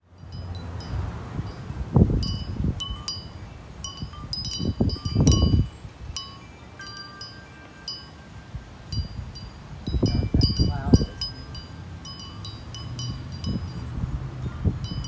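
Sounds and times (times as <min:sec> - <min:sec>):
wind chimes ringing: 0:00.0 - 0:15.0
low rumbling: 0:08.9 - 0:15.0.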